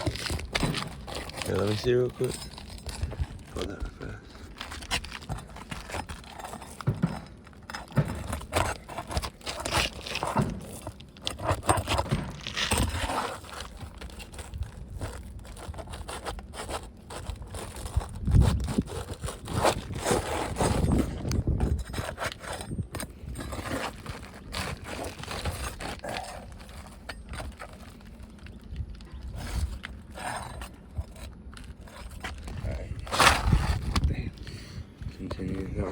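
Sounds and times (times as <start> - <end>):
pry bar scraping on shingles: 0.0 - 35.9
heavy knocks: 6.8 - 8.8.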